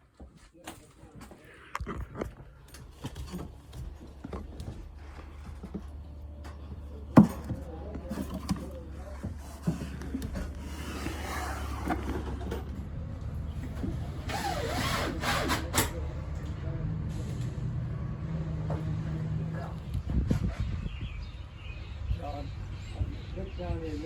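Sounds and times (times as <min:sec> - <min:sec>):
knocks and clatter of repair work: 0:00.1 - 0:12.9.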